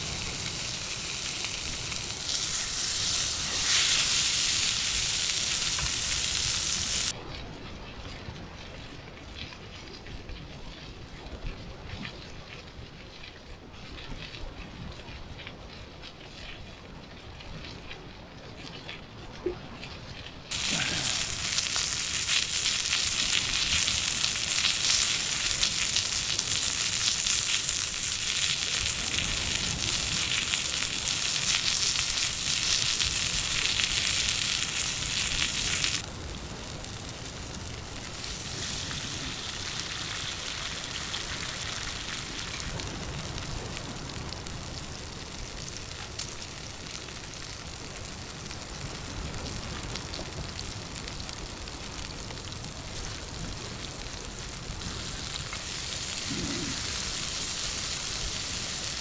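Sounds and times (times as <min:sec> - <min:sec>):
food sizzling in a pan: 0:00.0 - 0:07.2, 0:20.5 - 0:59.0.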